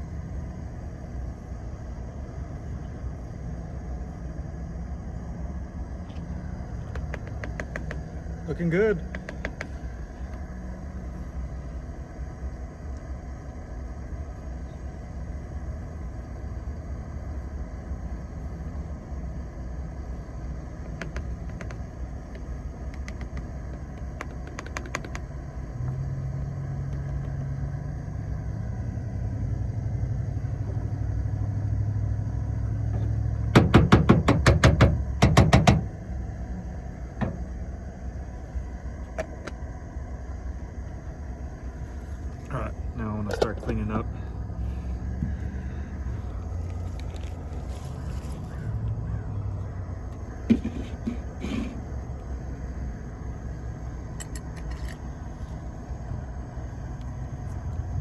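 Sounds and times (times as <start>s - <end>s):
engine hum: 0.0s - 58.0s
vehicle engine rumble: 0.0s - 58.0s
rapid clattering knocks: 6.8s - 8.1s, 33.5s - 36.0s.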